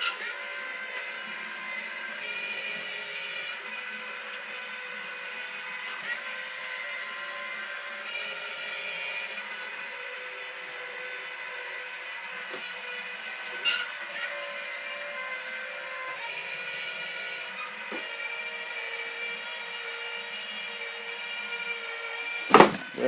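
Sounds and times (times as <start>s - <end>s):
electric motor and gears whining: 0.0s - 23.0s
sharp knock: 22.5s - 23.0s.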